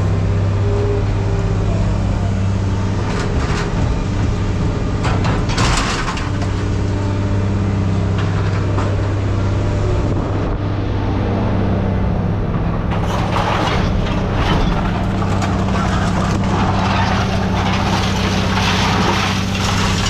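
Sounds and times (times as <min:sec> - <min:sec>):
heavy machine engine humming: 0:00.0 - 0:20.0
clatter bursts: 0:12.8 - 0:20.0.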